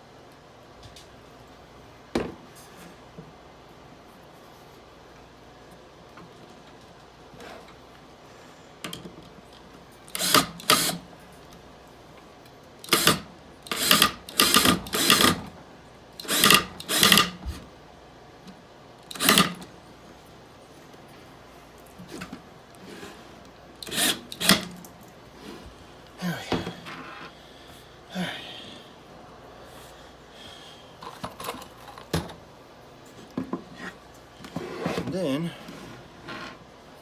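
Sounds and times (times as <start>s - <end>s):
power drill bursts: 10.1s - 11.1s, 12.8s - 15.5s, 16.2s - 17.4s, 19.1s - 19.6s, 23.8s - 24.8s.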